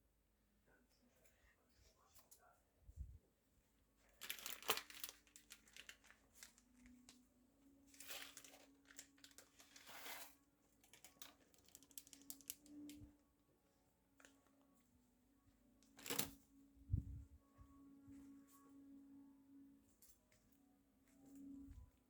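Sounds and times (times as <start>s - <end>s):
packaging crinkling: 4.2s - 7.2s, 7.9s - 13.0s, 15.9s - 16.3s.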